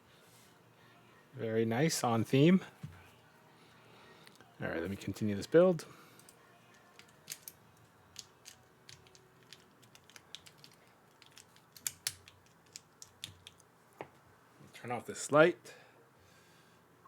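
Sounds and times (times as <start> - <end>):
keycaps snapping on: 7.0 - 7.5, 8.2 - 13.7
keycap plastic clicks: 7.0 - 7.6, 8.2 - 13.6.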